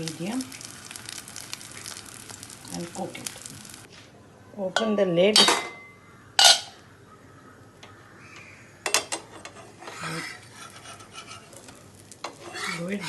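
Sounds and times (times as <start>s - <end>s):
cookware clattering on a pan: 4.8s - 6.8s.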